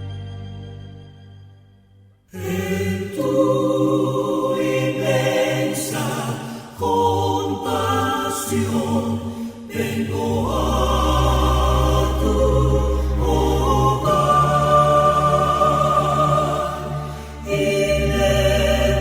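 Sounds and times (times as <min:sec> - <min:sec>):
choir singing sacred music: 0:02.3 - 0:19.0
deep bass voices: 0:09.8 - 0:19.0.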